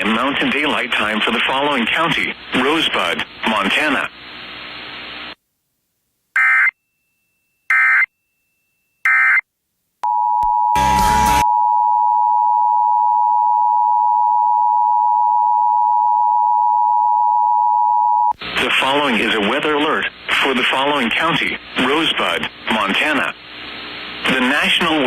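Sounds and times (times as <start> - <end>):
burst of static: 18.4 - 25.0.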